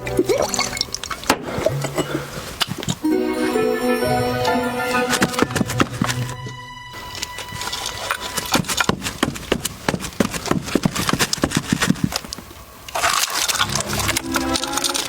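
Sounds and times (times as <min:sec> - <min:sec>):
hollow clip-clop hoof knocks: 0:05.1 - 0:06.4, 0:08.2 - 0:12.4.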